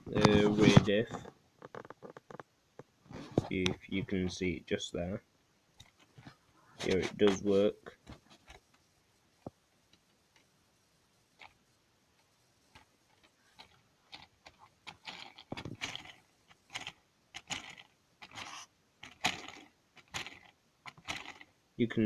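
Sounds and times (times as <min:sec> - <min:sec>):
plastic parts clicking and rattling: 0:12.7 - 0:21.6.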